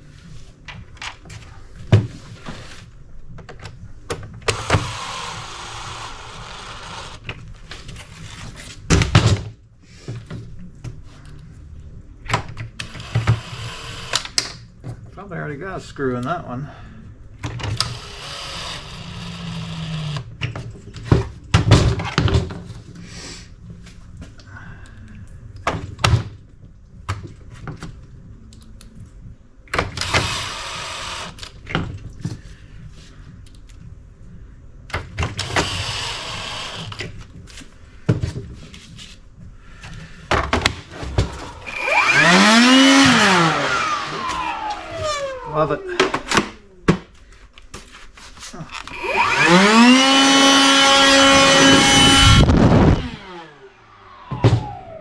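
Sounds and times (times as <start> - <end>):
cordless blower motor and fan: 4.4 - 7.3, 17.8 - 20.3, 30.0 - 31.5, 35.4 - 37.0, 41.2 - 46.3, 48.8 - 55.0.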